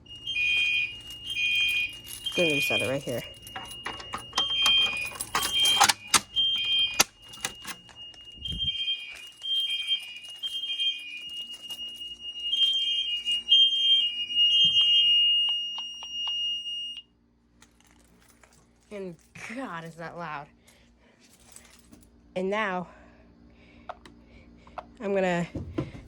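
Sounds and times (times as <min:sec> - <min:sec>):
steady high tone: 0:00.0 - 0:16.6
fire alarm horn blasts: 0:00.0 - 0:17.1.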